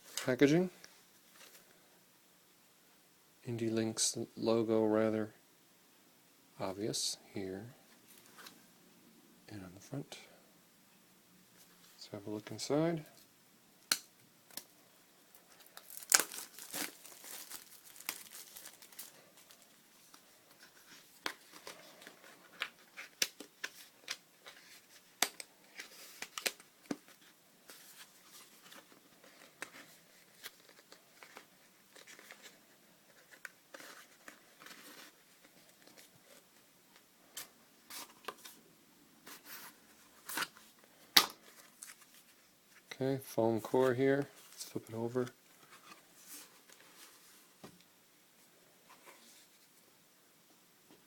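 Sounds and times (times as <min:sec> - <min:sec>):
packaging snapping: 0:15.6 - 0:19.6
packaging tearing and crinkling: 0:15.6 - 0:19.7.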